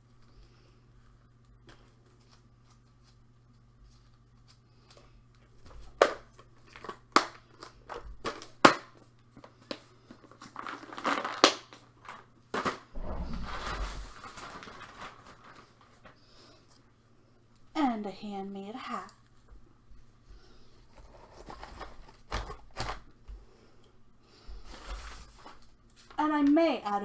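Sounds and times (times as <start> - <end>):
packaging crinkling: 10.3 - 12.8, 13.5 - 16.3
packaging rustling: 10.4 - 16.3.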